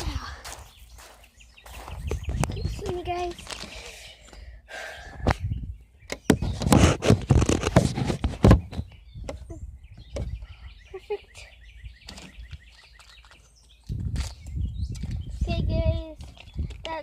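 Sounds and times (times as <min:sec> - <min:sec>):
microphone handling rustling: 0:01.7 - 0:04.0, 0:05.2 - 0:10.4.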